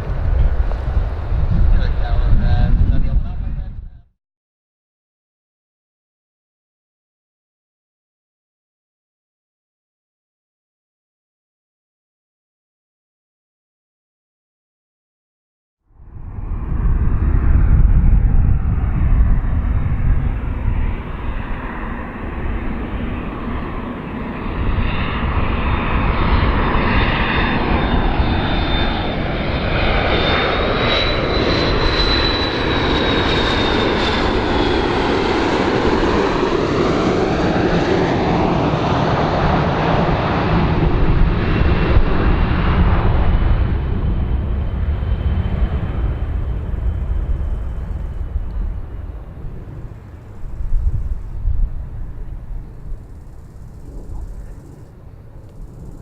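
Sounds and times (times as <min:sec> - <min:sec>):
airplane engine roar: 0:00.0 - 0:04.1, 0:15.9 - 0:56.0
high whine: 0:42.8 - 0:56.0.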